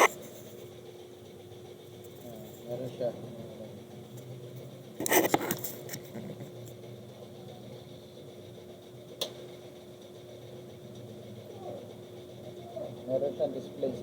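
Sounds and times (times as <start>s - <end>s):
computer fan hum: 0.0s - 14.0s.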